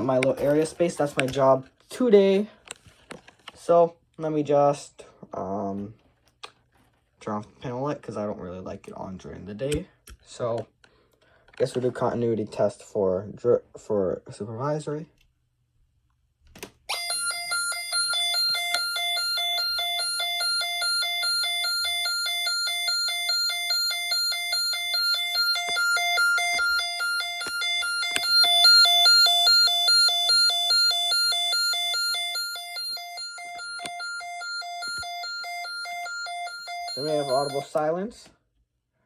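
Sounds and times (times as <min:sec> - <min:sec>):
pulsing electronic alarm tone: 0:16.9 - 0:37.8.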